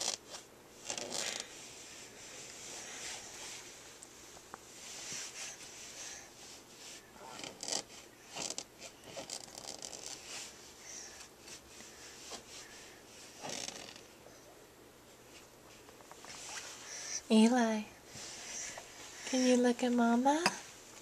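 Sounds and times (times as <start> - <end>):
fingernails scratching a surface: 7.4 - 10.4.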